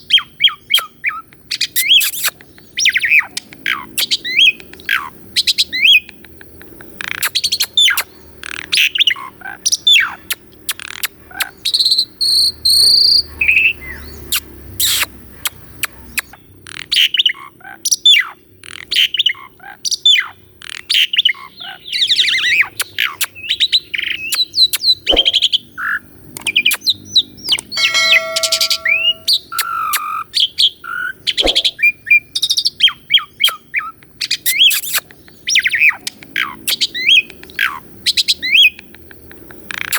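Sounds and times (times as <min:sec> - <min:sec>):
starling singing: 0:27.8 - 0:29.4.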